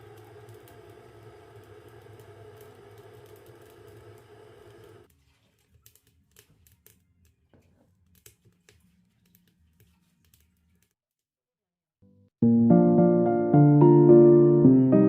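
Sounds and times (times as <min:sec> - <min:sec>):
faint clicks and ticks: 0:00.0 - 0:05.1.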